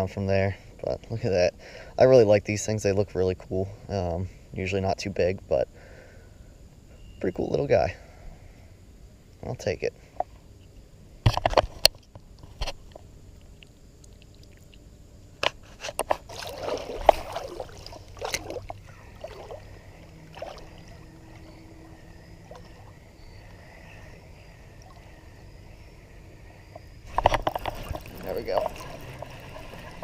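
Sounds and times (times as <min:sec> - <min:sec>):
water splashing and sloshing: 0:11.4 - 0:25.5, 0:26.7 - 0:30.0.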